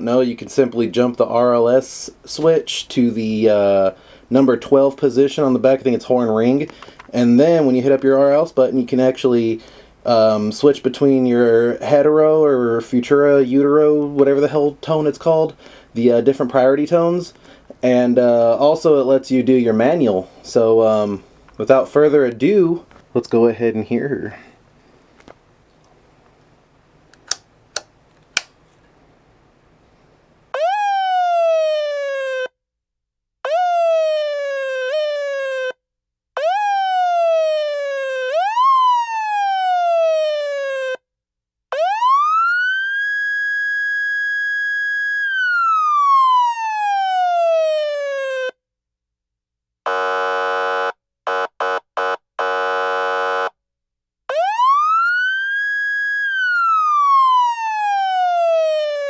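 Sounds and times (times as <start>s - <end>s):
switch clicks: 27.1s - 28.6s
electronic siren yelps and wail: 30.6s - 32.5s, 33.5s - 35.7s, 36.4s - 41.0s, 41.7s - 48.6s, 49.9s - 53.5s, 54.3s - 59.0s
buzzing siren horn blasts: 49.9s - 53.5s.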